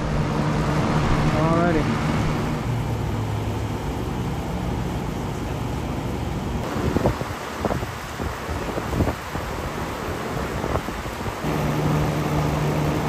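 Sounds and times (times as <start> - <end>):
air conditioner humming: 0.0 - 7.5, 11.4 - 13.0.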